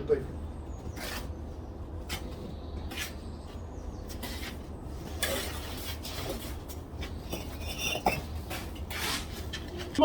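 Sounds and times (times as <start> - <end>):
low rumble of site background: 0.0 - 10.0
trowel scraping mortar: 0.9 - 1.4, 4.1 - 9.6.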